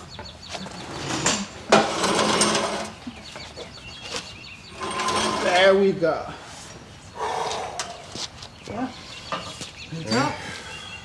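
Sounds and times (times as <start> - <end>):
metal scraping: 0.8 - 3.0, 4.7 - 5.8.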